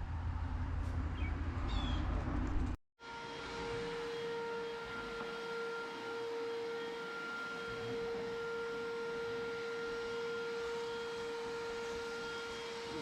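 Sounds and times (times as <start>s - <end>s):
motor whining: 3.3s - 13.0s.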